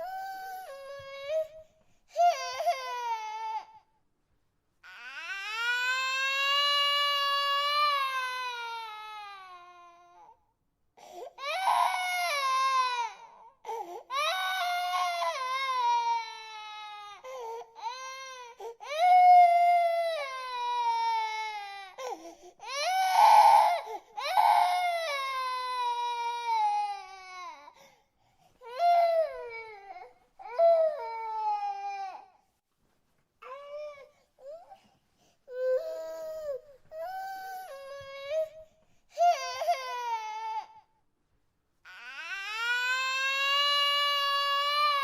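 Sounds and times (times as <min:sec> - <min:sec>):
baby crying: 0:02.2 - 0:03.8, 0:11.4 - 0:27.8, 0:41.9 - 0:45.0.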